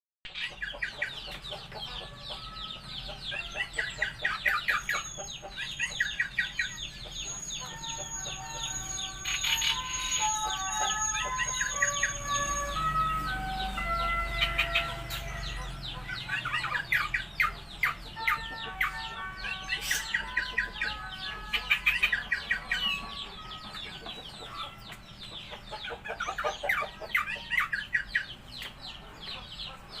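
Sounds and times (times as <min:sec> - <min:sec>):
songbird singing: 0:00.3 - 0:30.0.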